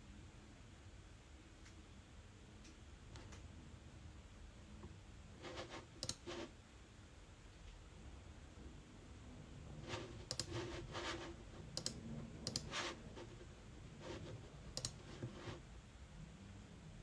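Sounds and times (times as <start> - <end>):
faint clicks: 6.0 - 6.2, 11.8 - 12.7, 14.8 - 15.1.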